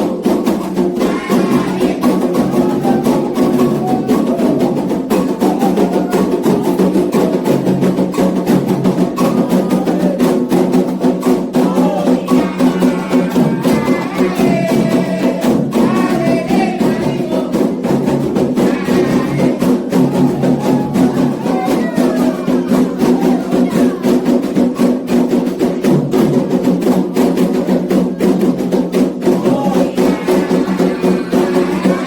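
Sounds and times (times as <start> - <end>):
voices singing a chant: 0.0 - 26.4, 27.2 - 32.0
fast hand drumming: 0.0 - 32.0
struck percussion keeping time: 0.0 - 32.0.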